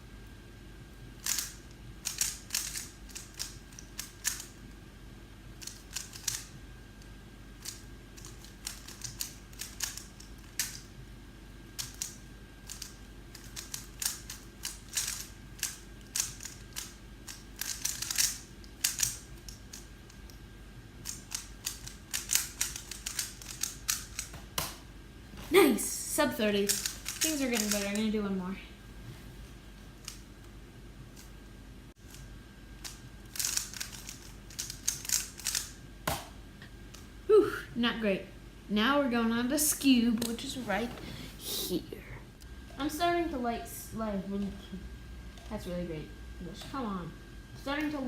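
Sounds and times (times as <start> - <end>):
puzzle cube clicking: 1.2 - 4.5, 5.6 - 6.5, 7.6 - 10.8, 11.8 - 20.3, 21.0 - 24.3, 26.7 - 27.9, 32.8 - 35.7.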